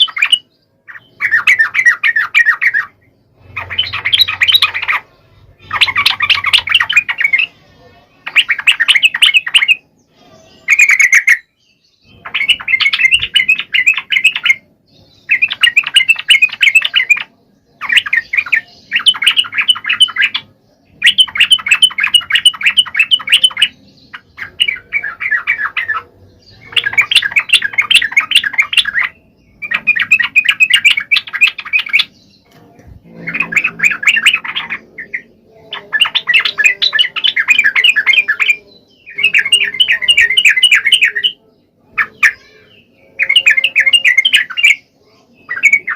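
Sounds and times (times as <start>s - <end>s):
bird singing chattering notes: 0.0s - 7.6s, 8.2s - 45.9s.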